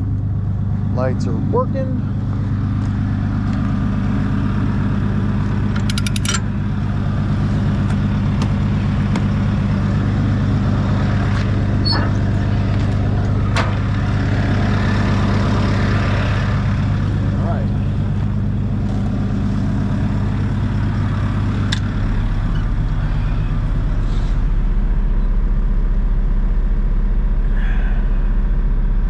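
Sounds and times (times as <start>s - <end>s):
engine running steadily: 0.0s - 29.0s
rapid clicks: 5.8s - 6.4s.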